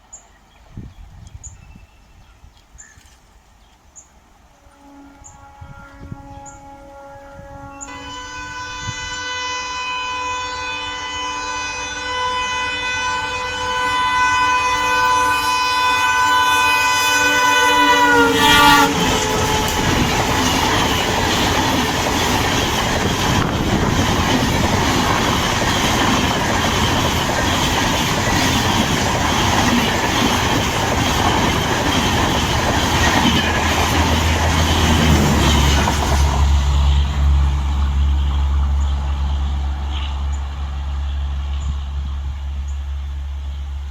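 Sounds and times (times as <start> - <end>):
train horn blast: 4.5 - 43.8
train wheels clattering over rails: 18.5 - 37.1.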